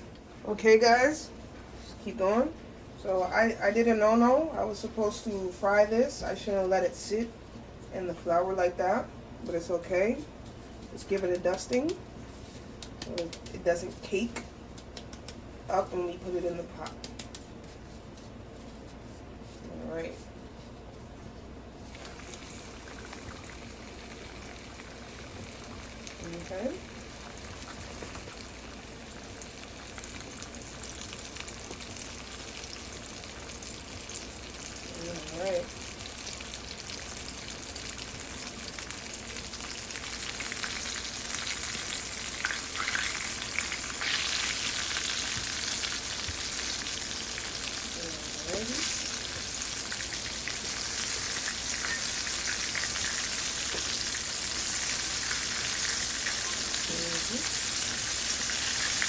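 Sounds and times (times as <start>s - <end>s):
hot oil sizzling in pot: 21.8s - 59.0s.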